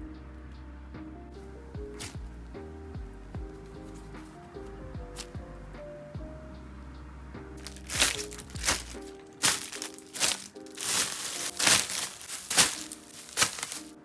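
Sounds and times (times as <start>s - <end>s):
soft lo-fi music: 0.0s - 14.0s
plastic packaging crinkling: 7.6s - 14.0s.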